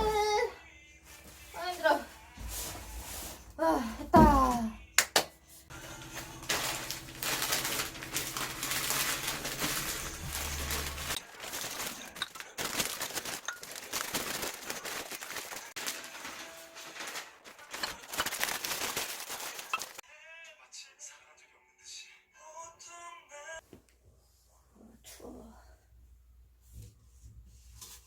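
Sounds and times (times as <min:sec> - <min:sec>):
rustling and handling noises: 0:01.0 - 0:04.7, 0:05.5 - 0:20.0, 0:26.6 - 0:28.0.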